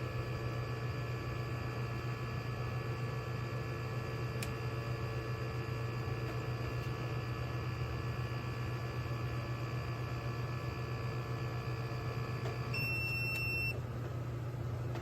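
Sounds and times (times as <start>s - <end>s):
espresso machine humming and whining: 0.0s - 15.0s
high beep: 12.8s - 13.8s.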